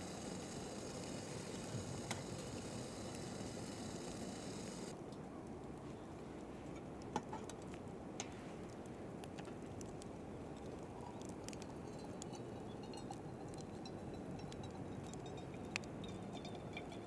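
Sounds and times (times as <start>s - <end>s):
wood fire crackling: 0.0s - 4.9s.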